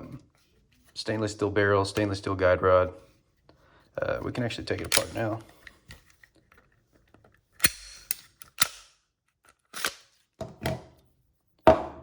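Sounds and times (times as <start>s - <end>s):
pistol slide sliding scrape: 7.6s - 8.8s, 9.7s - 10.2s
pistol slide metallic clicks: 7.6s - 9.0s, 9.7s - 10.1s.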